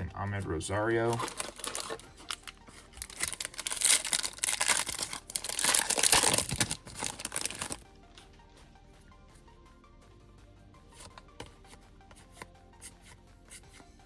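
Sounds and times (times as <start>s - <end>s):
foil wrapper crinkling and tearing: 1.0s - 7.8s.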